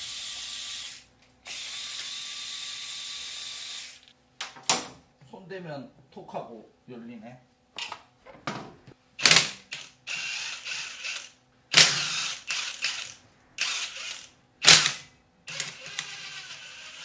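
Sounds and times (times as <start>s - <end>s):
ratchet wrench spinning: 9.8s - 14.3s, 14.9s - 17.0s.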